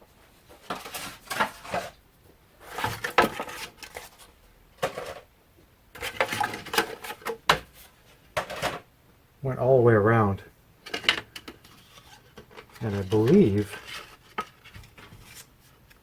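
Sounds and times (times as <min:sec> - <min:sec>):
metal shim crinkling and clattering: 0:00.4 - 0:02.0, 0:02.6 - 0:05.3, 0:05.9 - 0:08.9, 0:10.8 - 0:16.0.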